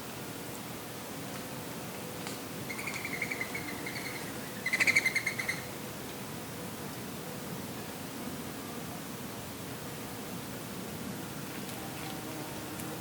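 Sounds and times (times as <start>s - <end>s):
soft breeze hiss: 0.0s - 13.0s
songbird chattering calls: 2.7s - 5.7s.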